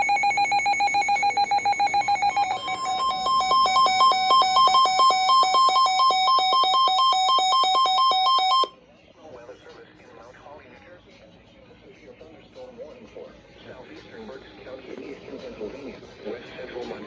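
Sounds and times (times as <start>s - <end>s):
rapid alarm beeps: 0.0s - 8.7s
two-pitch alarm warble: 0.0s - 8.7s.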